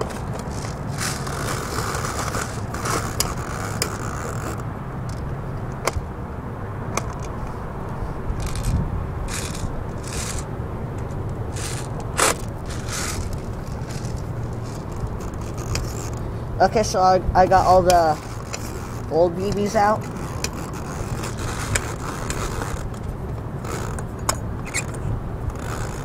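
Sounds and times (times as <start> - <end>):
metal scraping: 0.0 - 4.6, 8.4 - 16.3
low background rumble: 0.0 - 26.0.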